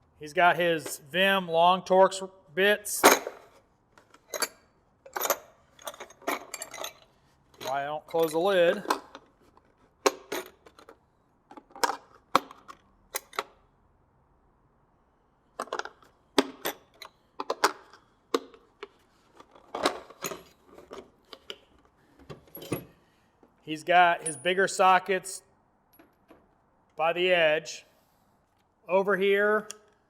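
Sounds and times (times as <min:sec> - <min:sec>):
metal tools clinking in drawer: 0:03.0 - 0:09.3, 0:10.0 - 0:11.0, 0:15.6 - 0:18.6, 0:19.4 - 0:23.0, 0:24.2 - 0:24.5.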